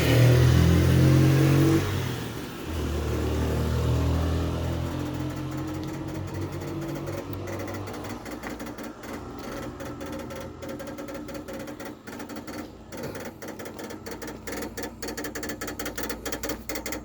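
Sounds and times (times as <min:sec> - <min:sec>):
fast mechanical clicking: 0:02.7 - 0:17.0.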